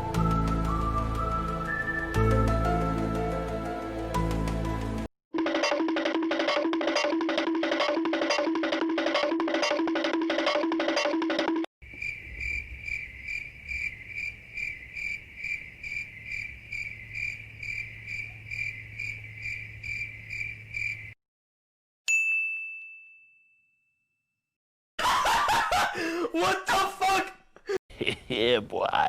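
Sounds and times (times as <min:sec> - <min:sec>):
music loop with knocking beat: 0:05.4 - 0:11.7
crickets chirping: 0:11.8 - 0:21.2
bright ding: 0:22.1 - 0:24.0.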